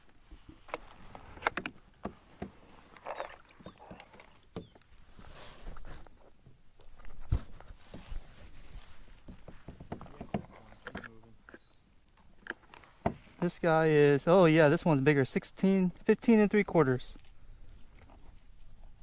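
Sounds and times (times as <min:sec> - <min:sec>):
fishing gear knocks and rattles: 0:09.2 - 0:13.4.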